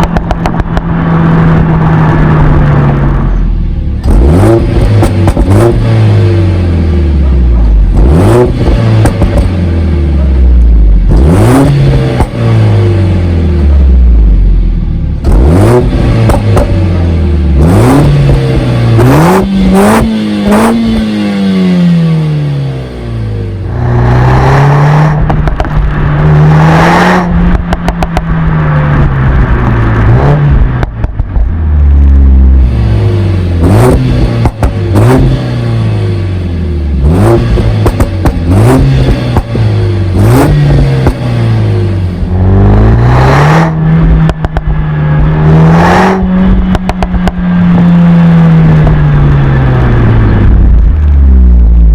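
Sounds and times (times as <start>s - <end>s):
exhaust pops and crackles: 0.0s - 3.4s, 4.0s - 6.0s, 7.3s - 12.5s, 15.2s - 21.0s, 25.0s - 35.6s, 37.0s - 51.9s
car engine revving: 0.0s - 51.9s.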